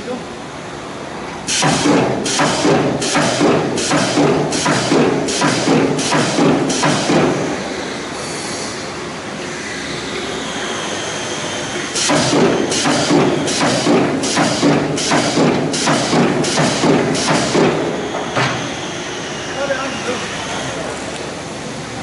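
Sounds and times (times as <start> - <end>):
machine hum: 0.4 - 22.0
welding heads thudding with hiss: 1.5 - 7.7, 11.8 - 19.1.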